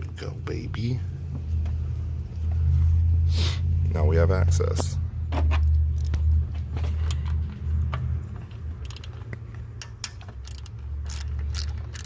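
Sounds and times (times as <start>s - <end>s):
hand ratchet clicking: 8.8s - 9.2s, 9.8s - 12.0s.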